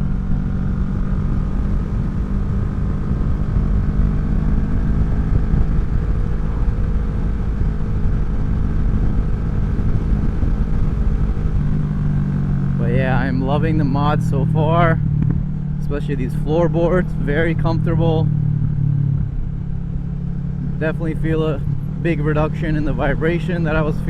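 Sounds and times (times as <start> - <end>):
wind rush on microphone: 0.0 - 14.2, 14.9 - 15.9
motorcycle engine cruising: 0.0 - 24.0.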